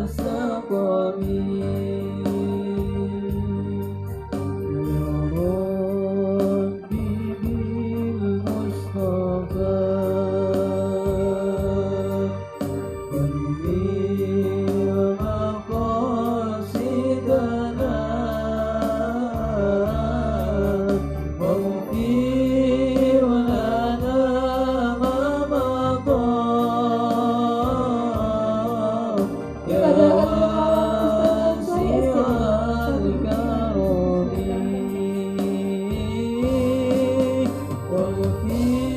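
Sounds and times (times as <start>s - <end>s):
male voices singing: 0.0s - 3.8s, 13.1s - 38.9s
electronic organ chords: 0.0s - 38.9s.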